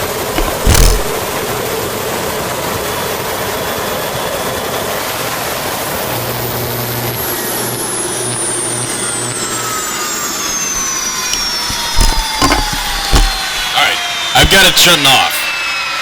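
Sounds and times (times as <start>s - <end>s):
gas turbine running: 0.0s - 1.8s, 8.8s - 15.3s
sharp thump: 0.3s - 1.4s, 10.8s - 13.8s.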